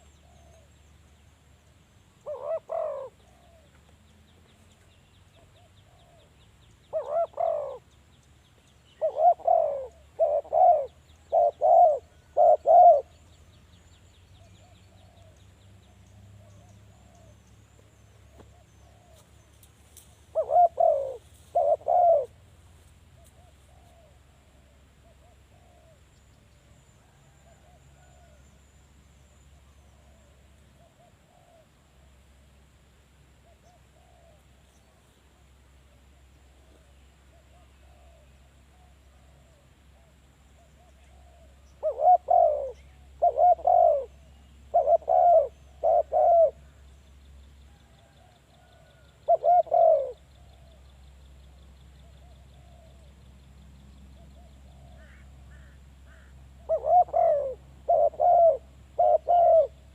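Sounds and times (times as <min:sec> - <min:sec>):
dove cooing: 0:02.2 - 0:03.8, 0:05.3 - 0:07.9, 0:09.0 - 0:13.2, 0:20.3 - 0:22.4, 0:23.2 - 0:26.0, 0:29.9 - 0:31.8, 0:33.4 - 0:34.5, 0:36.6 - 0:46.8, 0:47.8 - 0:50.8, 0:54.2 - 0:59.9.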